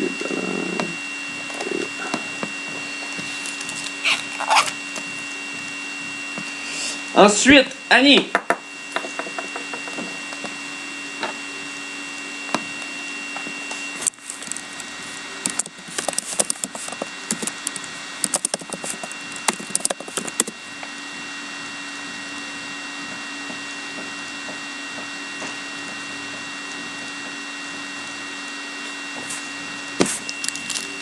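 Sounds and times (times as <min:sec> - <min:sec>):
steady electrical hum: 0:00.0 - 0:31.0
foil pack crinkling: 0:03.0 - 0:05.1, 0:14.0 - 0:20.5, 0:30.0 - 0:31.0.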